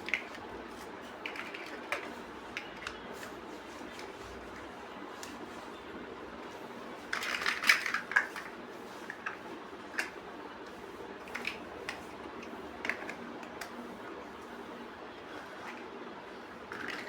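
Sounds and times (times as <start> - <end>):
low background hum: 0.0 - 17.0
plastic bricks rattling: 7.1 - 8.5, 16.7 - 17.0.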